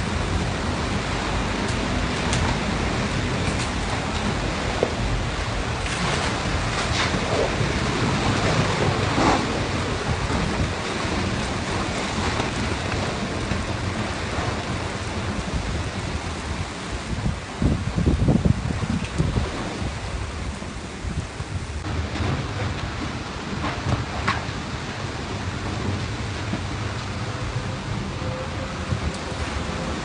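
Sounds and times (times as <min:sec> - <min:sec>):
heavy rain: 0:00.0 - 0:30.0
wind buffeting microphone: 0:00.0 - 0:30.0.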